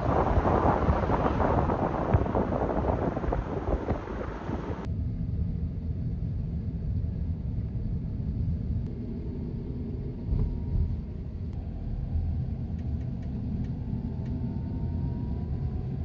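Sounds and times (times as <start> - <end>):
heavy rain pattering: 0.0 - 4.9
steady low rumble: 0.0 - 16.0.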